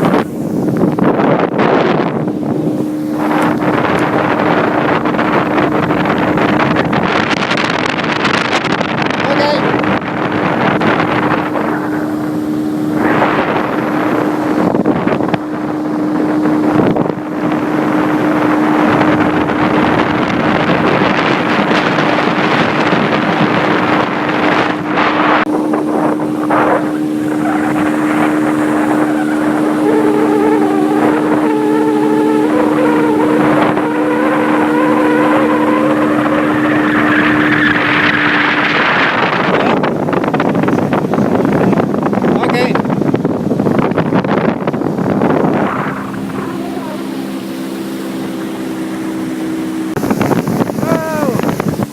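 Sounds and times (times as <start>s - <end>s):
motorboat engine: 0.0s - 51.9s
wind on microphone: 0.0s - 51.9s
wavering higher tone: 25.4s - 38.8s, 45.1s - 51.9s.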